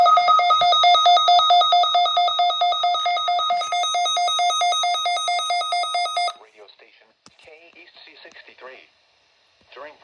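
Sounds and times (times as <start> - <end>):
rapid electronic alarm beeps: 0.0 - 6.4.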